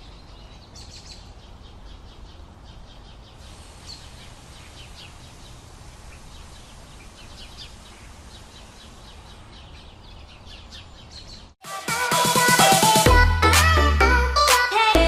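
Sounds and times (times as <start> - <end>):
songbirds chirping and singing: 0.0 - 11.6.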